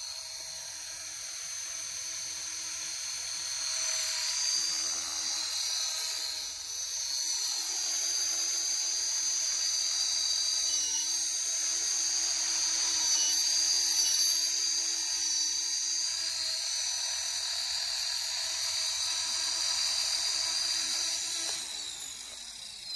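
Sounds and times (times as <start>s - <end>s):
high-pitched squeaky whine: 9.6s - 11.4s, 12.3s - 14.6s.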